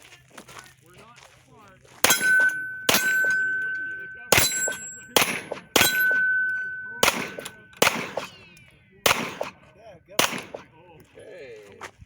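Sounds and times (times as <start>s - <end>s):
metallic ringing of steel targets: 2.0s - 10.7s
pistol shots: 2.0s - 10.7s.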